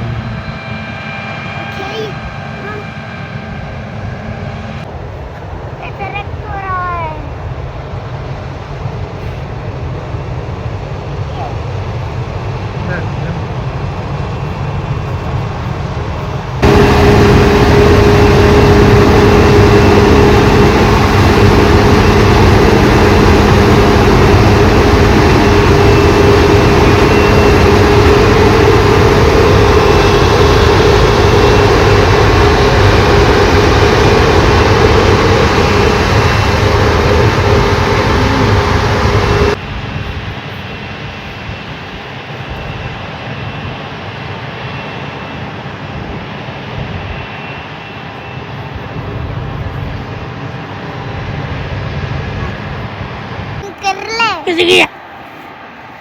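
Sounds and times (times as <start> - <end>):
heavy machinery engine drone: 0.0 - 6.6, 7.2 - 43.4
dull engine sound: 0.0 - 44.2.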